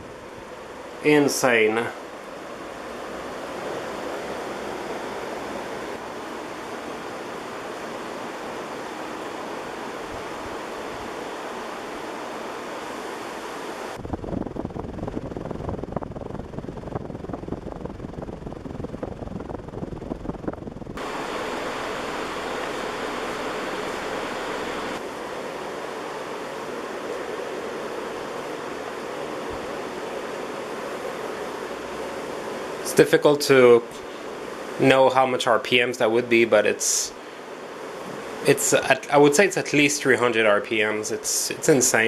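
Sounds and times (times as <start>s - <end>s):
ceiling fan air rush: 0.0s - 42.0s
wind buffeting microphone: 14.0s - 21.0s.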